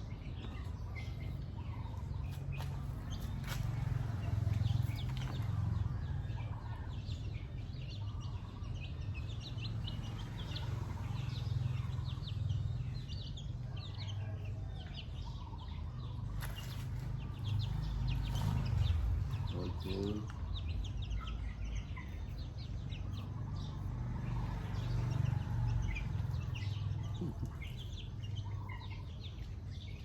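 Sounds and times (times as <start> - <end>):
chickens clucking and chirping: 0.0 - 30.0.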